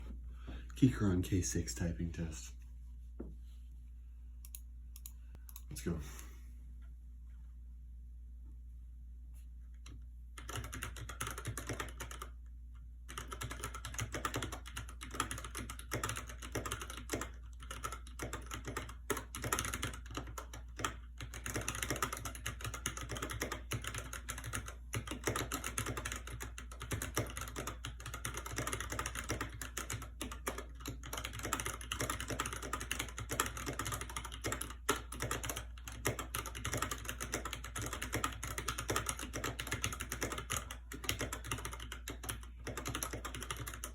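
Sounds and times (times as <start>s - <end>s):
fast typing on mechanical keyboard: 10.4s - 12.4s, 13.0s - 43.9s.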